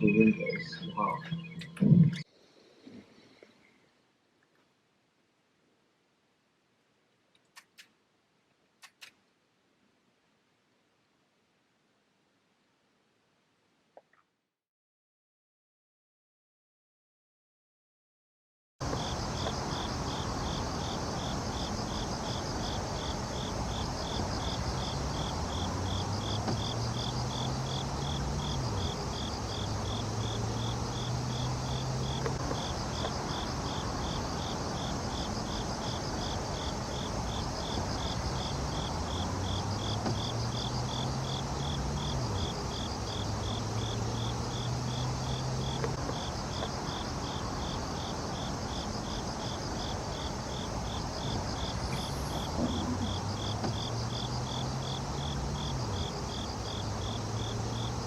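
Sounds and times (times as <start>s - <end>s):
insect chirping: 18.8s - 58.0s.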